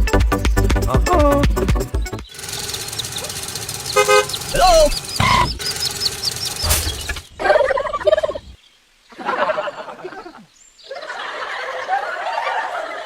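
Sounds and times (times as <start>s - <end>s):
rapid warbling animal calls: 2.3s - 8.6s.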